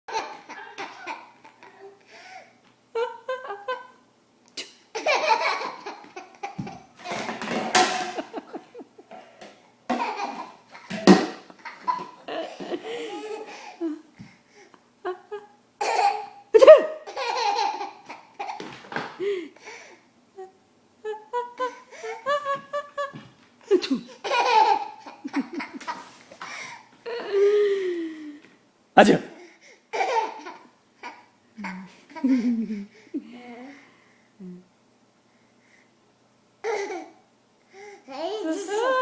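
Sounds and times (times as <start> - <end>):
young child laughing: 0.1 - 2.0, 9.9 - 14.1, 21.1 - 27.5.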